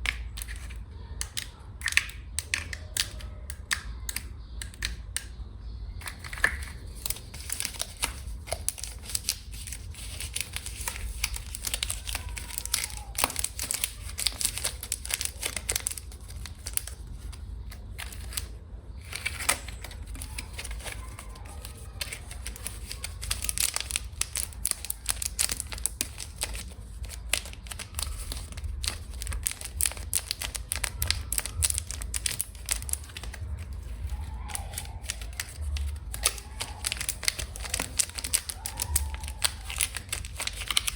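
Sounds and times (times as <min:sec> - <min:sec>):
packaging crinkling and tearing: 0:06.0 - 0:40.9.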